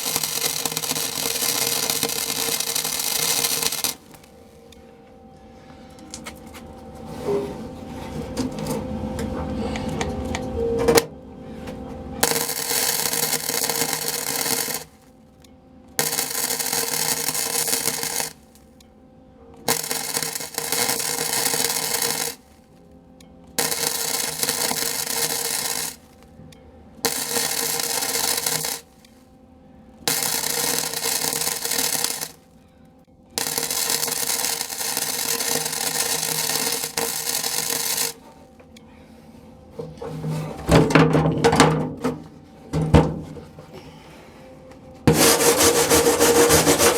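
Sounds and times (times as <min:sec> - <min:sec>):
electric welder crackling: 0:00.0 - 0:04.6, 0:12.2 - 0:18.8, 0:19.6 - 0:26.4, 0:27.0 - 0:29.3, 0:30.0 - 0:32.6, 0:33.3 - 0:38.5, 0:45.1 - 0:46.9.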